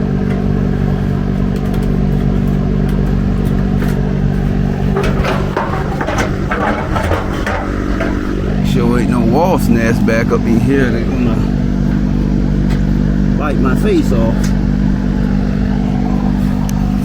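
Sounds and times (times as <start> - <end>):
motor humming: 0.0 - 17.0
tools and parts clattering: 1.5 - 8.8.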